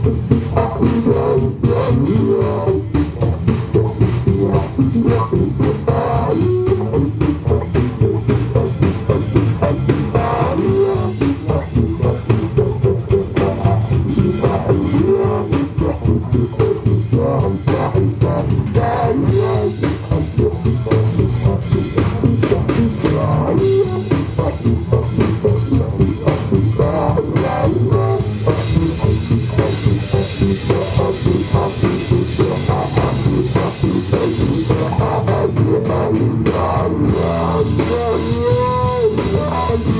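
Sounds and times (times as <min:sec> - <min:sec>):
bass guitar: 0:00.0 - 0:39.9
drum kit: 0:00.0 - 0:39.9
guitar: 0:00.0 - 0:39.9.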